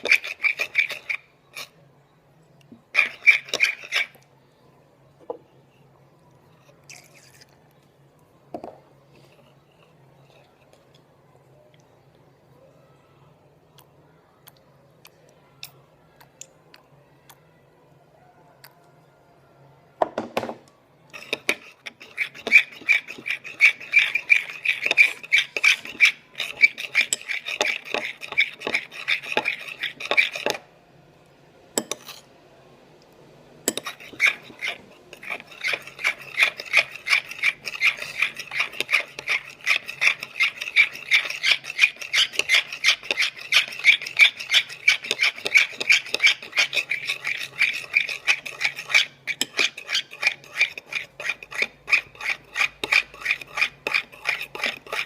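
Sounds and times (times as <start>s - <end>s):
slime stirred in a bowl: 0.0s - 1.8s, 2.8s - 4.2s, 21.1s - 30.7s, 31.8s - 32.3s, 33.7s - 55.0s
knock: 20.0s - 20.6s.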